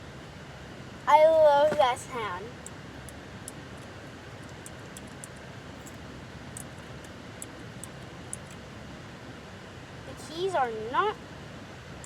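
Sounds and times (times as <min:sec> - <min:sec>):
car cabin rumble: 0:01.1 - 0:02.5.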